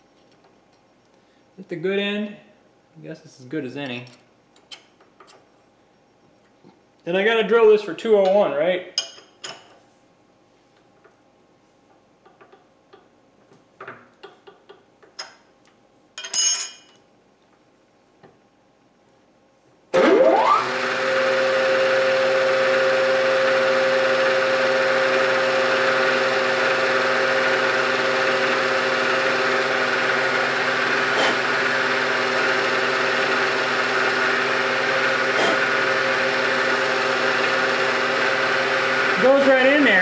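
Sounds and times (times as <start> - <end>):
spindle motor whining: 20.0 - 40.0.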